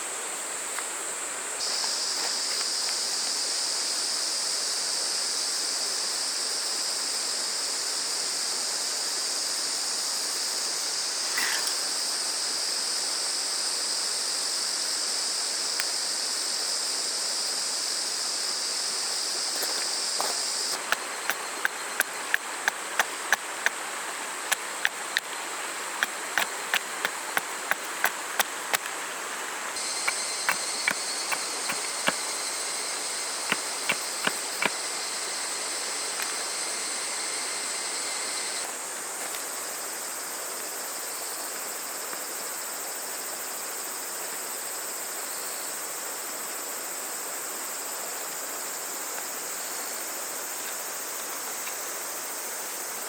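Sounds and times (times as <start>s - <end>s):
cicadas chorus: 0.0s - 53.0s
small stream rushing: 18.3s - 39.2s.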